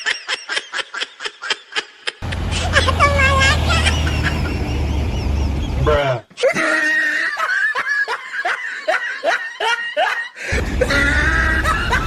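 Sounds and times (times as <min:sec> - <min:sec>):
low engine-like rumble: 0:02.2 - 0:06.0, 0:10.5 - 0:12.0.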